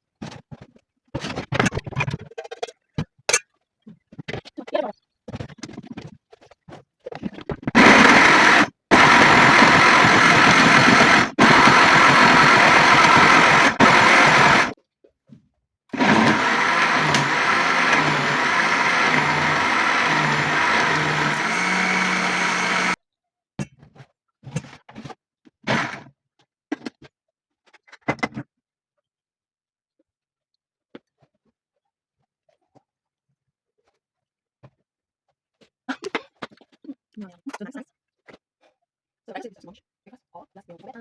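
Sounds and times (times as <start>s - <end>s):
electric blender running: 7.8s - 14.8s, 16.0s - 23.0s.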